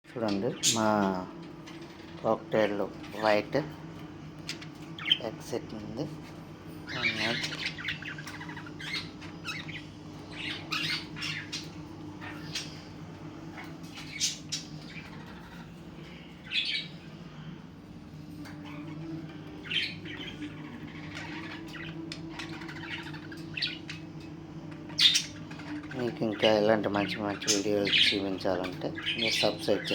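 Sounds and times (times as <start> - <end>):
steady low hum: 0.1 - 29.9
cockatiels squawking and chirping: 6.8 - 17.2, 18.4 - 29.9.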